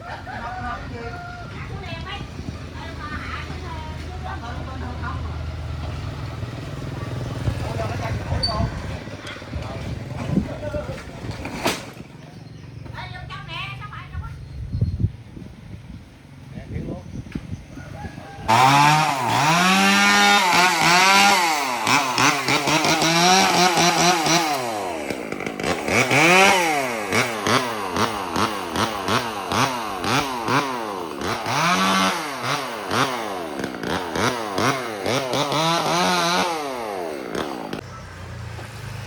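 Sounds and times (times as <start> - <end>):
chainsaw revving: 2.8 - 12.2, 18.2 - 39.0.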